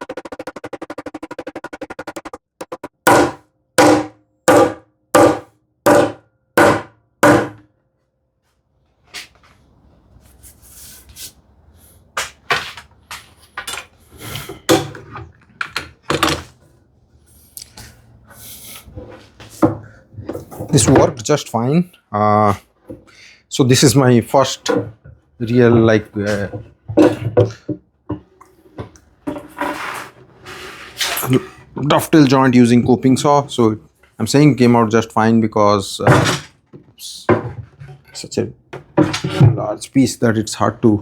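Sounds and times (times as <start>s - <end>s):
knocks on wood: 0.0s - 7.6s.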